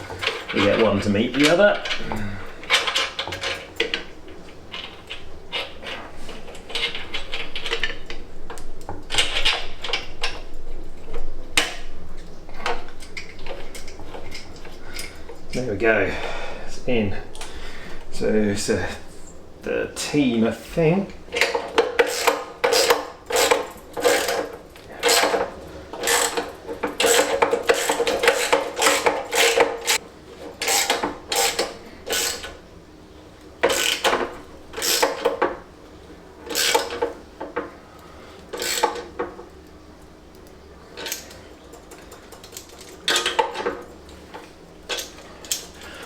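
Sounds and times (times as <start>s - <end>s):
ratchet spanner clicking: 21.3s - 30.0s, 30.6s - 32.6s, 33.6s - 35.4s, 36.5s - 37.1s, 38.5s - 39.2s.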